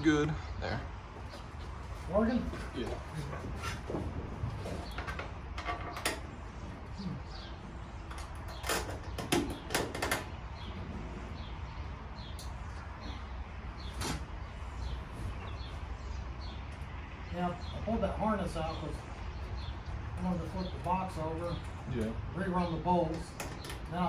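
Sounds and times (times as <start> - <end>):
tools knocking and clicking: 8.1 - 10.3.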